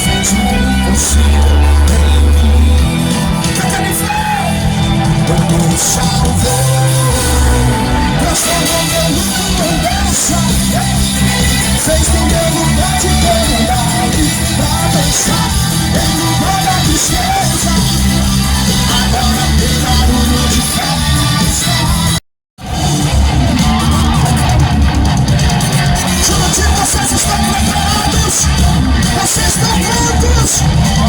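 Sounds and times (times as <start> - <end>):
worship music with singing: 0.0 - 22.2, 25.7 - 31.0.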